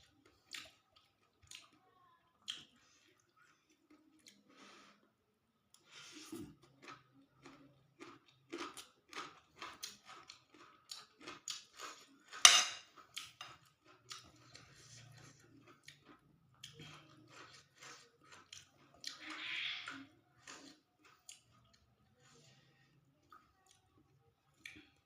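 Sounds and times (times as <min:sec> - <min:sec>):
chewing: 0:00.0 - 0:05.1, 0:05.7 - 0:25.0
cutlery scraping on a plate: 0:12.3 - 0:13.6.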